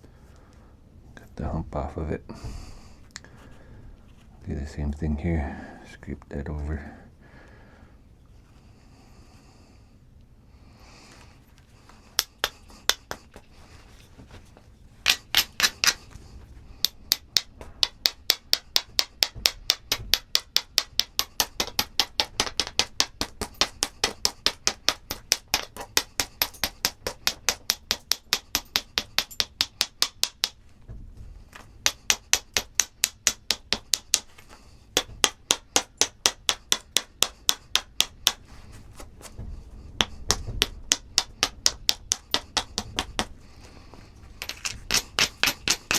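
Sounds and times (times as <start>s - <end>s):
stone clicking on stone: 12.2s - 13.5s, 15.0s - 16.2s, 16.8s - 30.6s, 31.8s - 43.8s, 44.4s - 45.9s.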